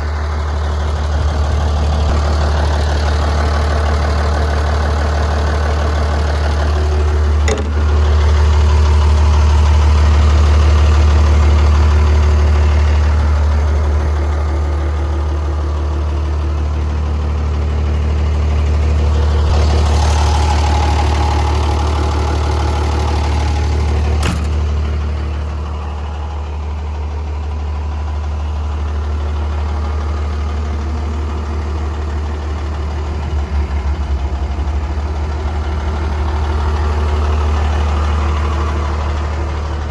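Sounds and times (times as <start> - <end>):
diesel engine humming: 0.0 - 39.9
sharp knocks: 7.5 - 7.9.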